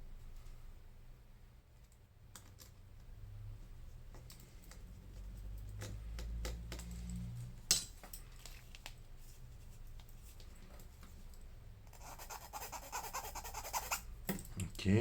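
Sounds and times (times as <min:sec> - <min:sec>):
small tools clicking and tapping: 0:04.1 - 0:09.0.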